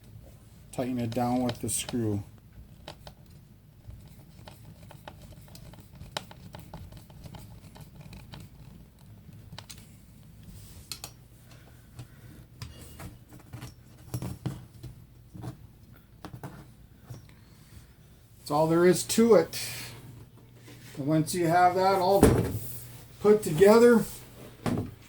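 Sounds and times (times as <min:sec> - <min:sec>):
small clicks and scratches: 0:01.0 - 0:16.7.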